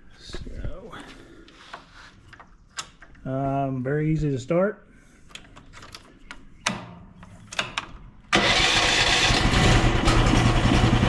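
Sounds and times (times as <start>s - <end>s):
small petrol engine starting: 8.3s - 11.0s.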